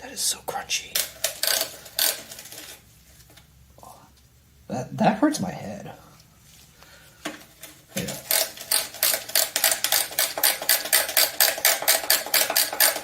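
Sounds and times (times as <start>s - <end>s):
socket ratchet clicking: 1.0s - 2.6s, 8.2s - 13.0s.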